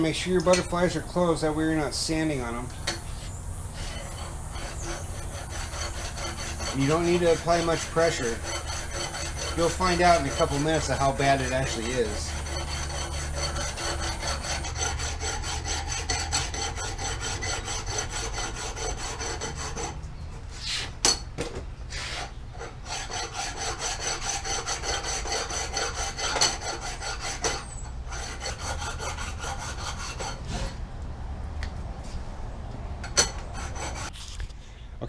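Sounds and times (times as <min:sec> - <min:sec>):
sanding metal scraping strokes: 0:00.1 - 0:21.0, 0:21.9 - 0:30.8, 0:33.1 - 0:34.3.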